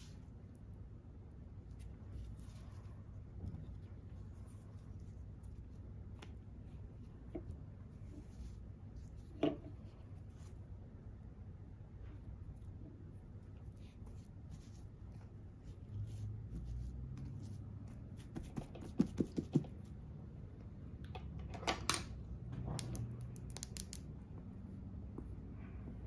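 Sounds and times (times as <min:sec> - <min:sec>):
makeup items tapping and clicking: 0:22.8 - 0:24.1.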